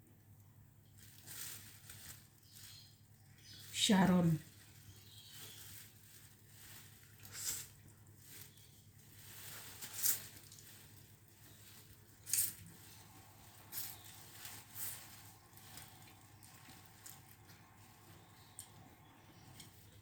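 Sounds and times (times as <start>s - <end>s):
chewing noodles: 12.2s - 20.0s.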